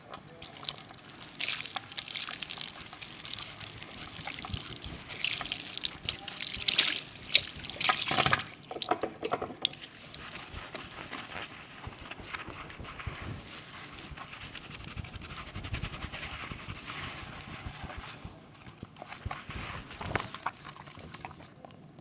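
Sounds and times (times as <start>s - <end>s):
water splashing and dripping: 0.4s - 10.4s
hands washing soapy hair: 0.4s - 18.0s.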